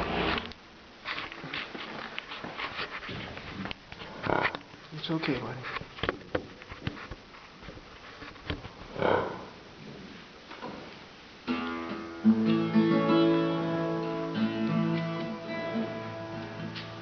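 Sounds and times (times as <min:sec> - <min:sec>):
acoustic guitar strumming chords: 0:11.4 - 0:17.0.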